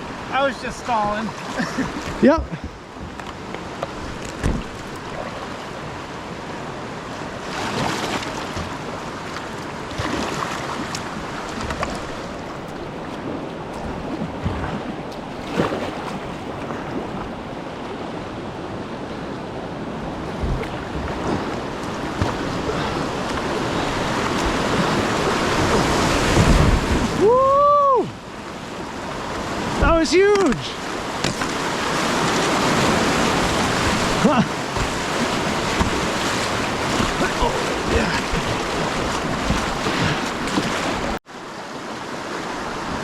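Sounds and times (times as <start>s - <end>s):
whitewater rushing: 0.0s - 3.0s, 18.3s - 43.0s
water splashes: 0.0s - 6.4s, 7.2s - 18.3s, 18.9s - 41.2s
wind buffeting microphone: 19.6s - 27.8s.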